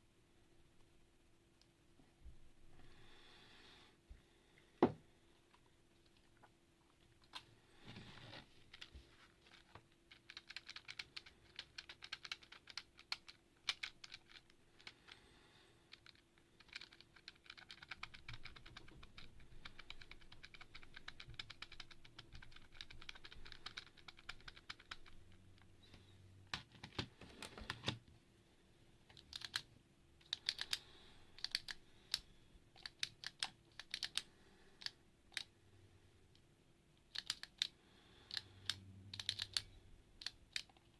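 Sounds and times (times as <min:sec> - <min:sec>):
faint steady hum: 0:00.0 - 0:40.9
mechanical keyboard typing: 0:09.5 - 0:15.0, 0:15.9 - 0:25.2, 0:29.1 - 0:30.8, 0:31.4 - 0:32.2, 0:32.8 - 0:35.5, 0:37.1 - 0:37.7, 0:38.3 - 0:40.8.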